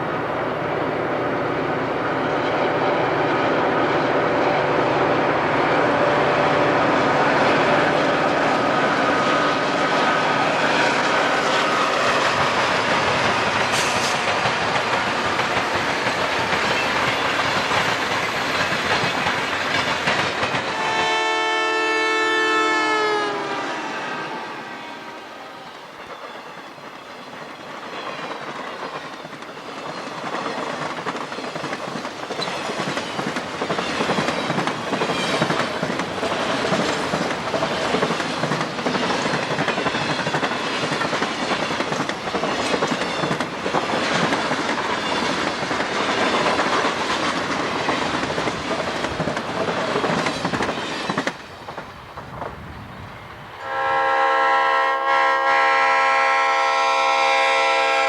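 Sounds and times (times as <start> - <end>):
rumble of train cars: 0.0 - 58.0
train horn: 4.3 - 12.5, 20.7 - 26.0, 53.6 - 58.0
train wheels clattering: 6.9 - 21.6, 25.7 - 52.9.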